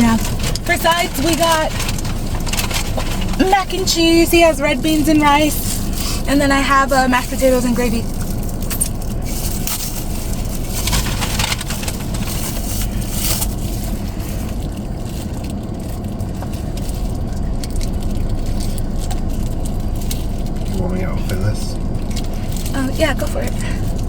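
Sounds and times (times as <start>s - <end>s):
low car rumble: 0.0s - 24.0s
crunching fried chicken chewing: 1.7s - 3.4s, 8.0s - 22.8s.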